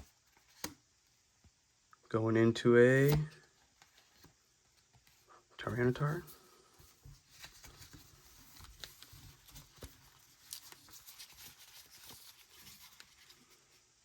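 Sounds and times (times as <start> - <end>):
trading cards clicking and rustling: 0.0 - 0.8, 7.2 - 13.6.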